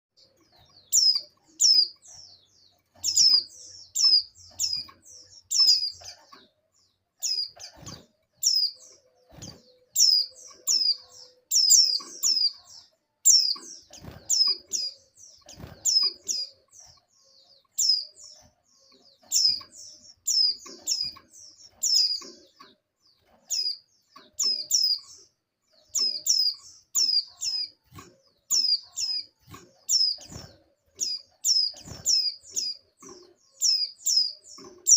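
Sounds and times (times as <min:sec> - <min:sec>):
bird high chirps sliding downward: 0:03.1 - 0:06.0, 0:08.4 - 0:12.6.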